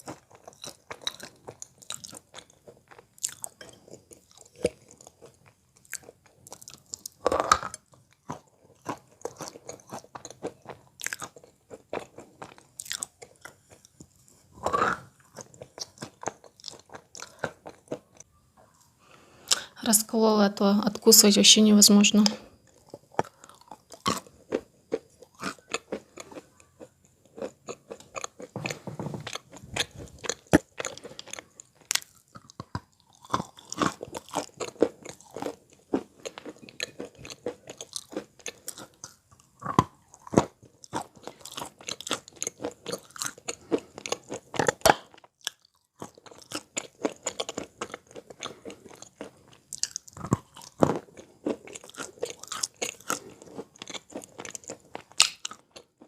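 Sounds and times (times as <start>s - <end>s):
chalk being crunched and chewed: 22.7s - 56.0s.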